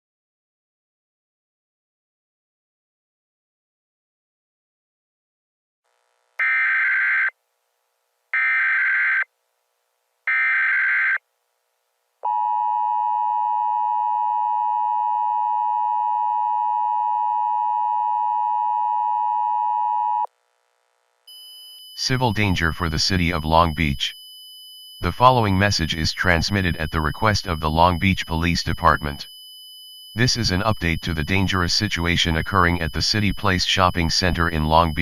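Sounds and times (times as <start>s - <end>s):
buzzing data tones: 21.3s - 35.0s
two-tone attention signal: 30.2s - 35.0s.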